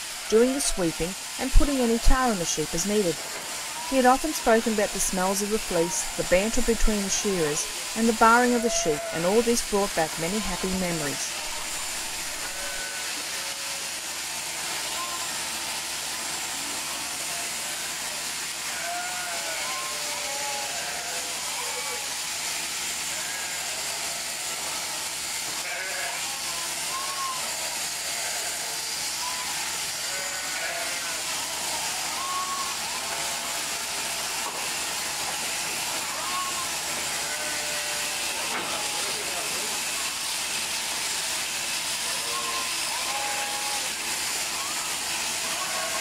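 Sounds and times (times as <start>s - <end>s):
sheep and lambs bleating: 0.2s - 13.8s, 18.6s - 22.2s, 22.9s - 24.2s, 25.6s - 33.8s, 36.0s - 39.3s, 42.0s - 44.0s.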